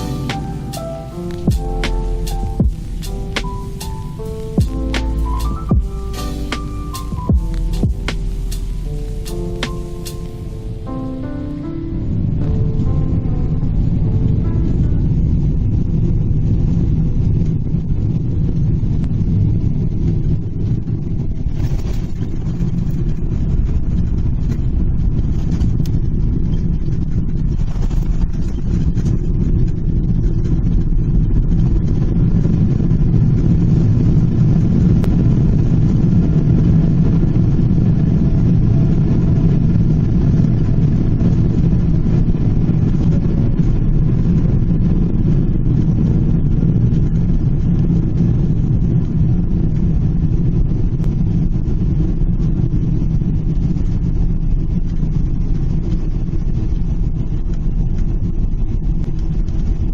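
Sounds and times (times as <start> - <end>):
airliner cabin engine rumble: 0.0 - 59.9.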